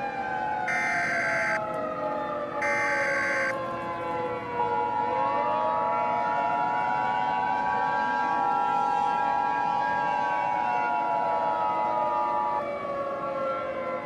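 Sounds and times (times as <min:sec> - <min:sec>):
civil defense siren winding: 0:00.0 - 0:14.0
two-tone attention signal: 0:00.7 - 0:01.6, 0:02.6 - 0:03.5.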